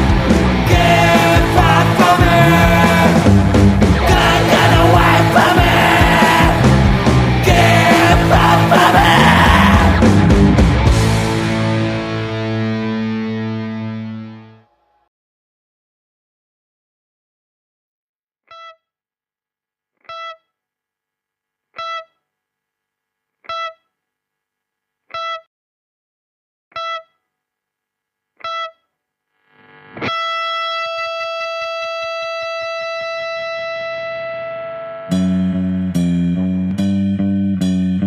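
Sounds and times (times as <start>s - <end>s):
electric guitar notes: 0.0s - 14.8s, 29.6s - 38.0s.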